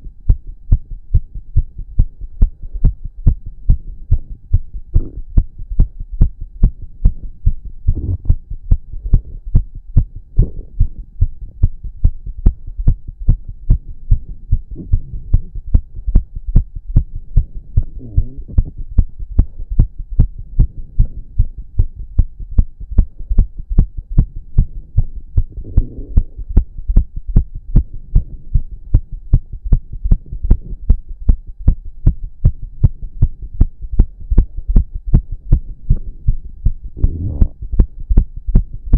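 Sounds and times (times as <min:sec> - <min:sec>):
fast pounding heartbeat: 0:00.0 - 0:38.9.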